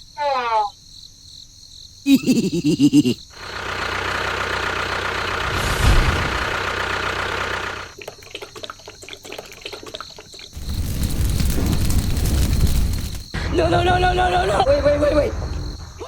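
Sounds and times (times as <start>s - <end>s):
vehicle engine running: 3.4s - 8.0s.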